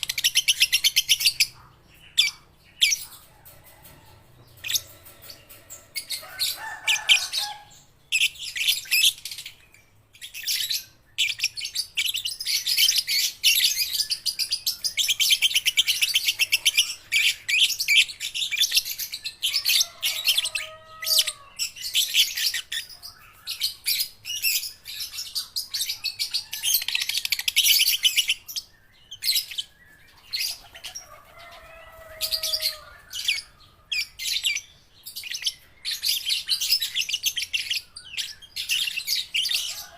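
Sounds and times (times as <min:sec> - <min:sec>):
lovebirds chirping and trilling: 0:00.0 - 0:39.9.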